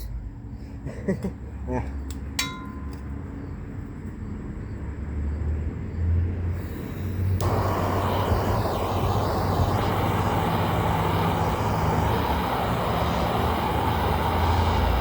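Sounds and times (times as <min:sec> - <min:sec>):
hammer ringing on steel shovel: 0:02.4 - 0:03.0
loud rushing noise: 0:07.4 - 0:15.0.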